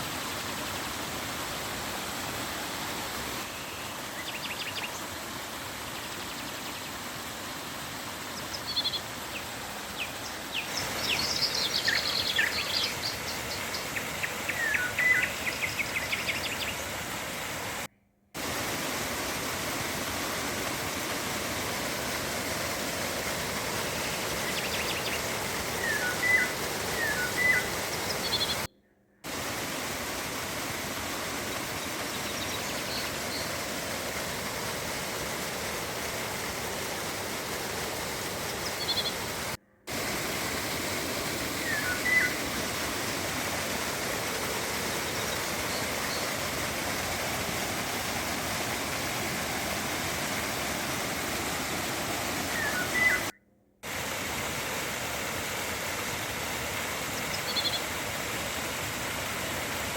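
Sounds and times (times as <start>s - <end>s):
river water rushing: 0.0s - 28.7s, 29.3s - 59.9s
birds chirping: 8.4s - 17.0s, 23.9s - 29.2s, 38.4s - 39.6s, 40.3s - 43.4s, 52.4s - 53.4s, 57.2s - 57.9s.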